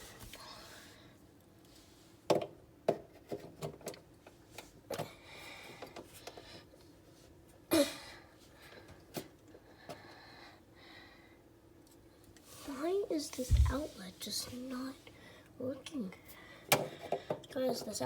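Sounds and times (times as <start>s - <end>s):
rustling handling noise: 12.4s - 14.8s.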